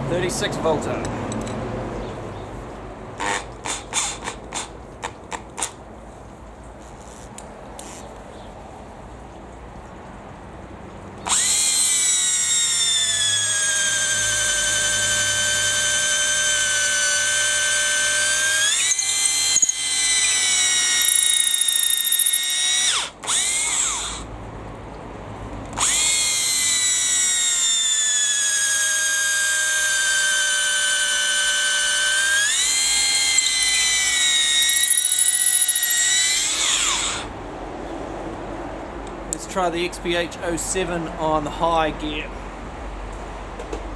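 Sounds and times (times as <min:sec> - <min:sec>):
cordless drill motor whine: 0:11.2 - 0:24.3, 0:25.7 - 0:37.3.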